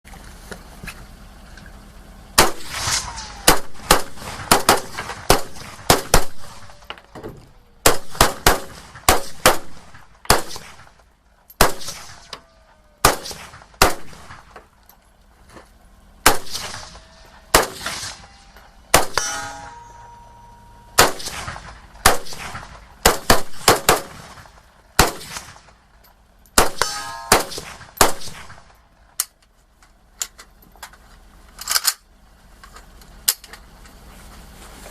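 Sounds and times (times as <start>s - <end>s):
rifle shots: 2.4s - 7.0s, 7.8s - 14.6s, 16.2s - 20.3s, 20.9s - 25.9s, 26.6s - 28.8s
steel targets clanging: 2.4s - 15.1s, 16.3s - 22.9s, 23.5s - 29.4s.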